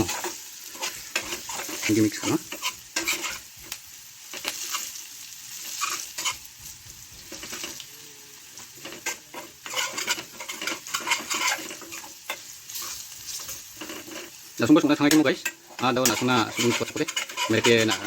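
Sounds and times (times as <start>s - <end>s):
utensil scraping and knocking pan: 0.0s - 3.4s, 8.8s - 14.4s, 15.0s - 18.0s
curry sizzling in a pan: 0.0s - 18.0s.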